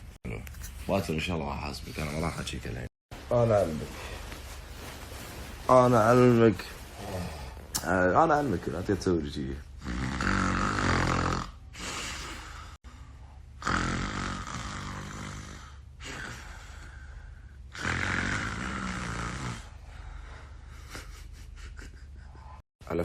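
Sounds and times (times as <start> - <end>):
man snoring: 9.8 - 12.8, 13.6 - 17.0, 17.7 - 19.8.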